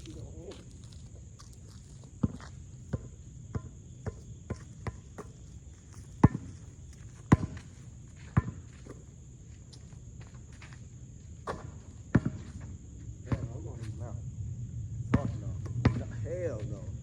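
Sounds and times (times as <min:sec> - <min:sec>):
crickets chirring: 0:00.0 - 0:17.0
basketball bouncing on hard court: 0:02.2 - 0:05.5, 0:06.1 - 0:06.6, 0:07.2 - 0:07.7, 0:08.3 - 0:09.0, 0:11.5 - 0:12.4, 0:15.1 - 0:16.1.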